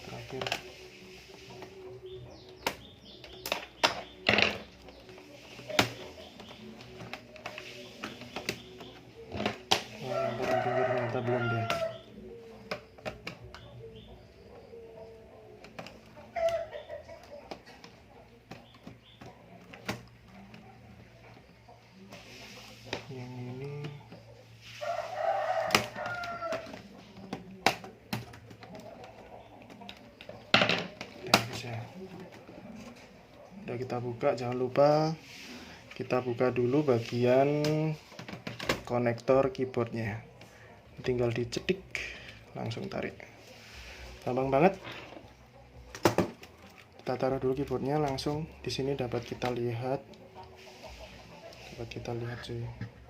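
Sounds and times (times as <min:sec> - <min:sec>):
rooster crowing: 0:10.0 - 0:12.1, 0:24.8 - 0:26.8.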